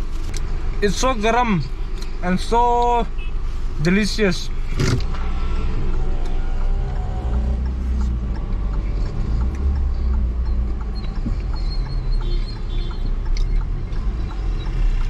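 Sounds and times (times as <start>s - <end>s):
vehicle low rumble: 0.0s - 15.0s
faint ticks: 5.0s - 15.0s.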